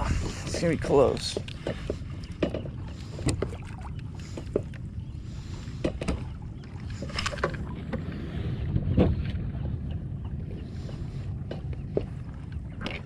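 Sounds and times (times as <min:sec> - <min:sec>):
water rumble: 0:00.0 - 0:13.0
wind: 0:00.0 - 0:13.0
knocks and taps on kayak: 0:01.2 - 0:03.6, 0:05.8 - 0:06.3.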